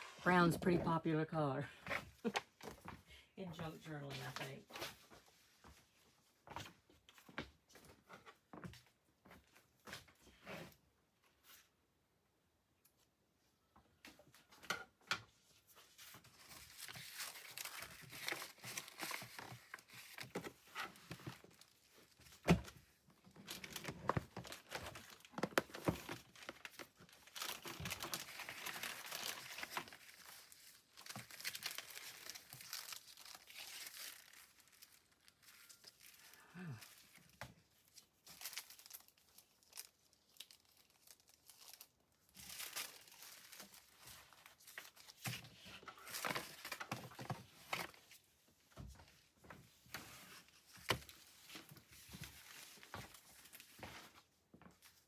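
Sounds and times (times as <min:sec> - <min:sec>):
paper and fabric rustling: 0:15.4 - 0:36.4, 0:37.0 - 0:55.0.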